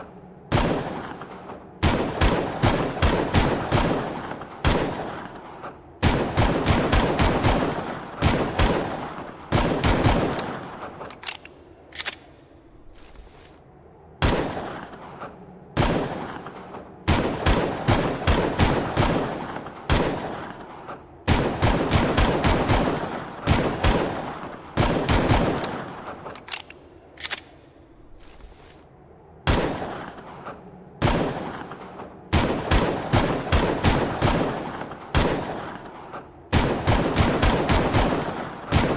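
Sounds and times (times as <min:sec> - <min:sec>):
pistol gunshots with echo: 0:00.4 - 0:12.4, 0:14.2 - 0:28.2, 0:29.4 - 0:38.9.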